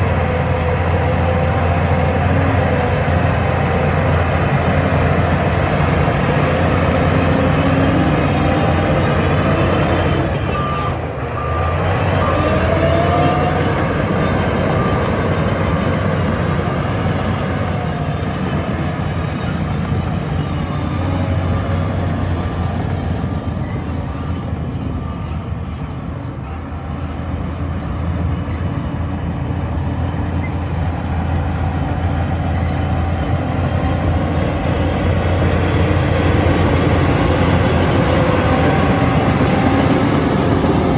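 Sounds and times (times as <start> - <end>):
bulldozer diesel engine running: 0.0 - 40.9
reversing alarm beeping: 4.1 - 26.7, 34.9 - 40.9.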